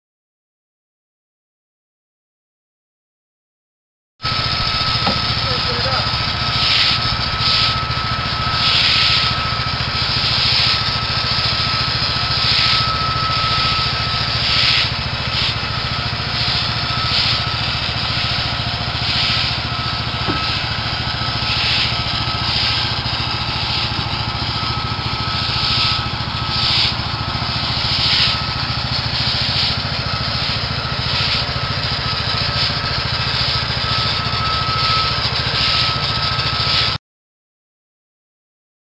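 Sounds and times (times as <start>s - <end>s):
small petrol engine running: 4.2s - 37.0s
rasping hiss: 4.6s - 24.6s, 25.3s - 31.6s.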